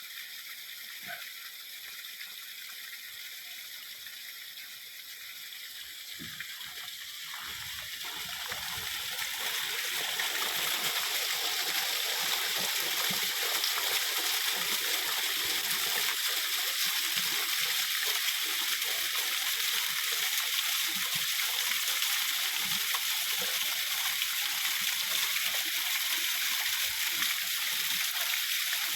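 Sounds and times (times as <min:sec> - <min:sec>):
small waterfall rushing: 0:06.0 - 0:28.9.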